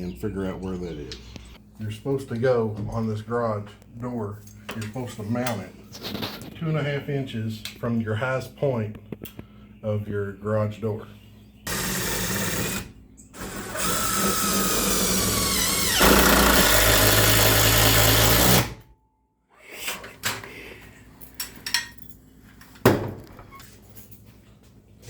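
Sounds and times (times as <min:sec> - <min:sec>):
power drill running: 0:11.7 - 0:18.8.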